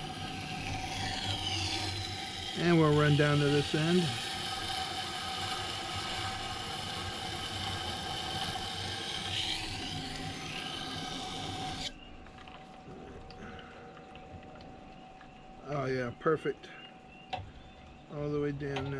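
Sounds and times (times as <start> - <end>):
knife grinding on stone: 0.0 - 11.9
machine humming: 0.0 - 18.9.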